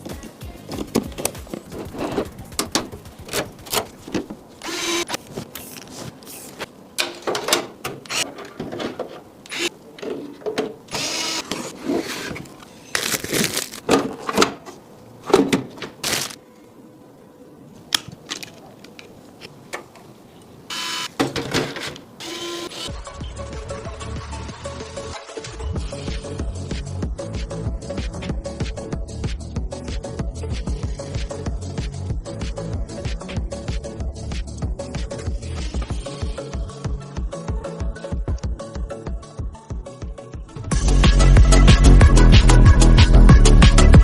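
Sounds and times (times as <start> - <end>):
electric screwdriver whirring: 4.6 - 5.2, 10.9 - 11.7, 22.2 - 22.9.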